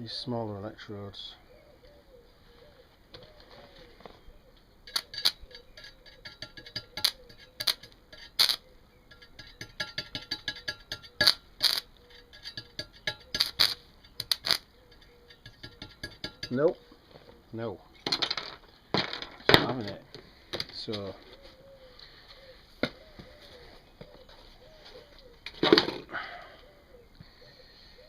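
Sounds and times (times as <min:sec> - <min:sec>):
welding arc crackling: 0:07.0 - 0:08.6, 0:11.2 - 0:11.9, 0:13.4 - 0:14.7.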